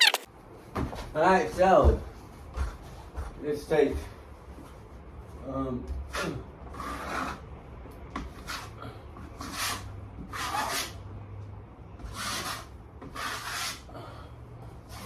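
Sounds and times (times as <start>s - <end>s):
hand tool scraping plaster: 12.0s - 13.9s.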